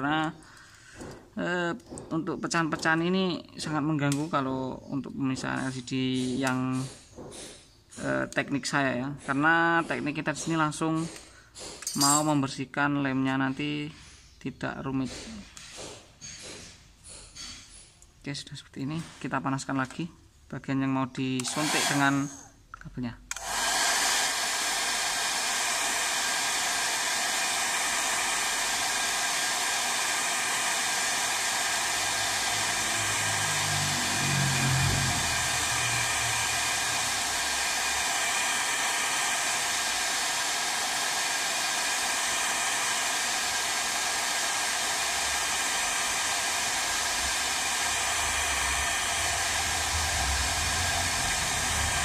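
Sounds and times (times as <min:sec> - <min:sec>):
hair dryer blowing: 0:21.4 - 0:22.2, 0:23.3 - 0:52.0.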